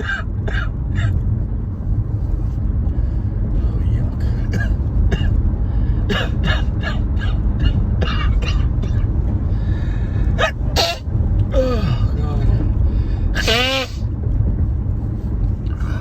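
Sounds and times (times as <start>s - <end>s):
car rumble on road: 0.0s - 16.0s.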